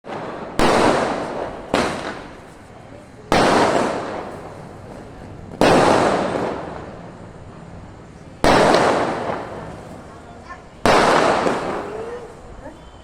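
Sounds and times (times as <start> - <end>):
firework bangs: 0.0 - 13.0
rumble after firework: 0.1 - 13.0.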